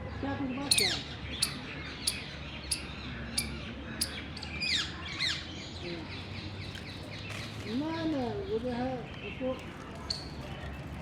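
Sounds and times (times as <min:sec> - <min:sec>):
squirrel chirping: 0:00.6 - 0:04.8.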